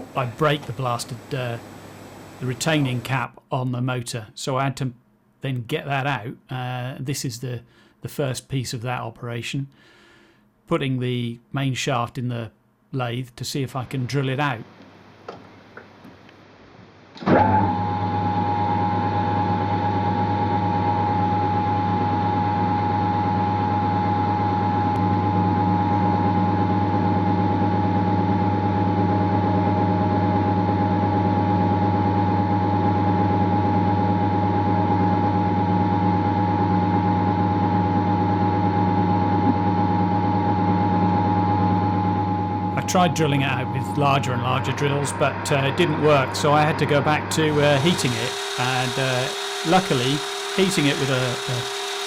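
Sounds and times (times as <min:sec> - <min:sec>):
metal lathe running: 0:42.7 - 0:52.0.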